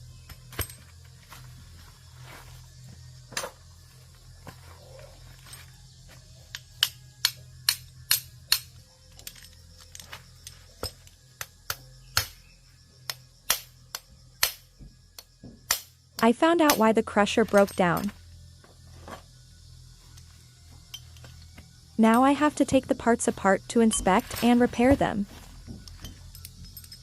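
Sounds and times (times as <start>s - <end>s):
low steady hum: 0.0s - 27.0s
metal tools clinking: 9.1s - 11.1s, 17.4s - 18.2s, 23.7s - 25.1s, 25.8s - 27.0s.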